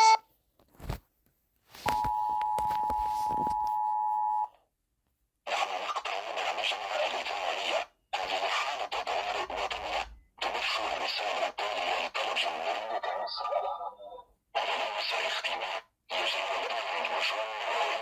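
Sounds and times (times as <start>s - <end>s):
two-tone alert signal: 0.0s - 0.2s, 1.9s - 4.5s.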